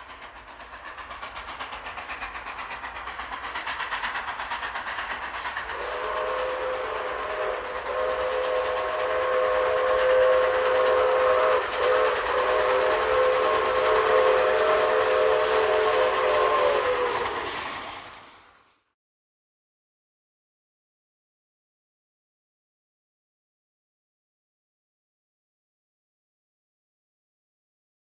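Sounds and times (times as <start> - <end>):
train rolling on rails: 0.0 - 19.0
train horn chord: 5.7 - 17.0.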